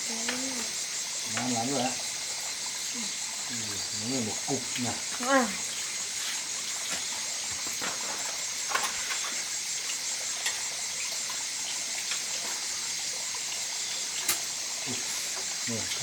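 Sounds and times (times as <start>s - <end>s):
liquid boiling in a pot: 0.0s - 16.0s.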